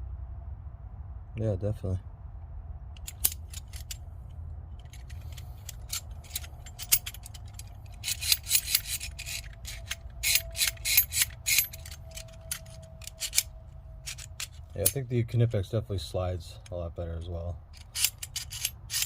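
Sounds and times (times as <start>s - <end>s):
pliers jaws clicking metal on metal: 4.9s - 13.5s, 17.8s - 19.0s.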